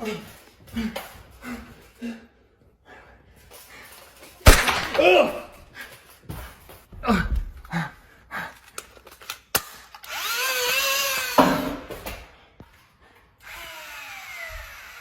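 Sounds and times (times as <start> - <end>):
sharp clicks: 4.5 - 5.5
toy blaster flywheels whining: 10.0 - 11.4, 13.4 - 15.0.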